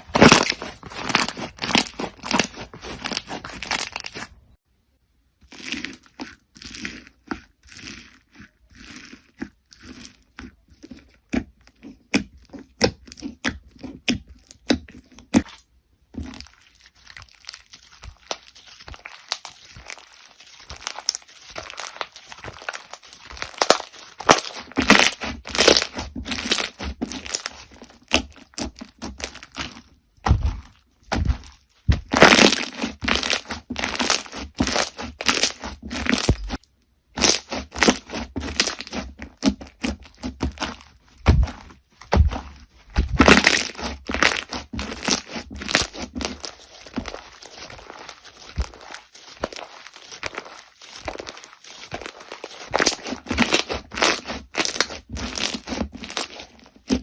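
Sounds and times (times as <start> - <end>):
crunchy slime crackling: 0.0 - 4.6, 5.4 - 57.0.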